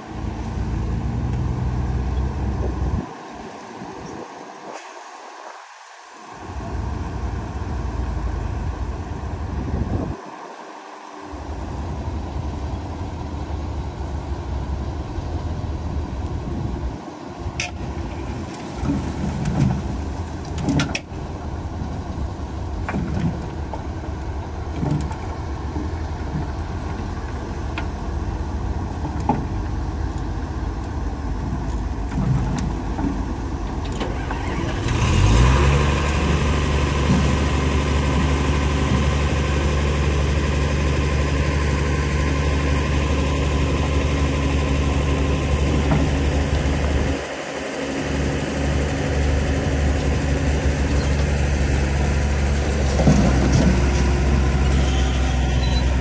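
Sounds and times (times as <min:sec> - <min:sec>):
heavy diesel engine running: 0:06.4 - 0:10.2, 0:11.3 - 0:56.0.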